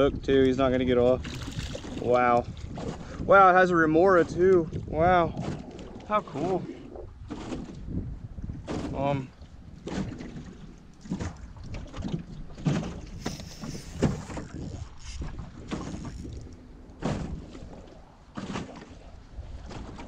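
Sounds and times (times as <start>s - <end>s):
water splashing against boat: 0.0s - 20.0s
wind on microphone: 0.0s - 20.0s.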